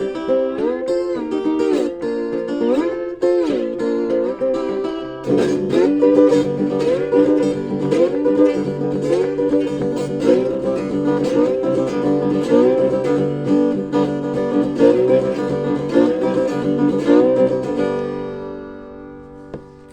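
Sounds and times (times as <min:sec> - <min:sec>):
strummed guitar chords: 0:00.0 - 0:19.9.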